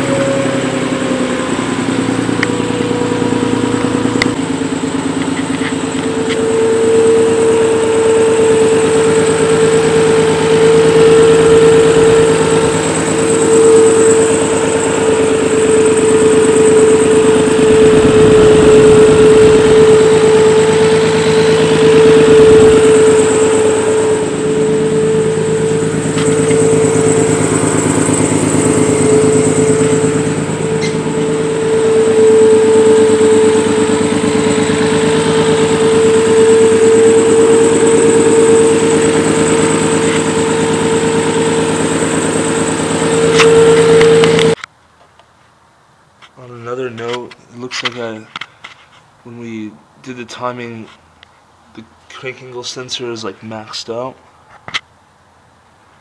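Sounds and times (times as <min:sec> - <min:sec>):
car engine running: 0:00.0 - 0:44.6
loud steady whine: 0:00.0 - 0:44.7.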